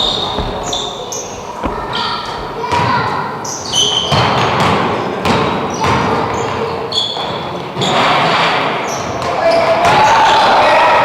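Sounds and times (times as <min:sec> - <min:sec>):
basketball bouncing on floor: 0:00.0 - 0:02.9
sneaker squeaks: 0:00.0 - 0:04.1.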